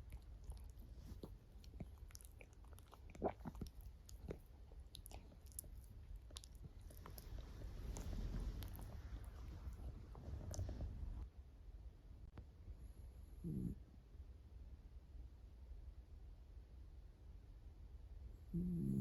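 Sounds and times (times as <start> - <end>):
dog snoring: 13.4 - 13.8, 18.5 - 19.0.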